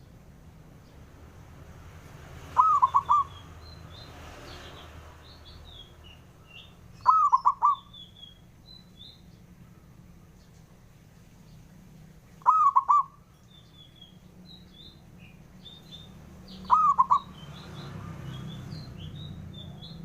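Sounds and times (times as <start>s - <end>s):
small birds chirping: 0.0s - 20.0s
dove cooing: 2.5s - 3.5s, 7.0s - 8.0s, 12.4s - 13.2s, 16.6s - 17.4s.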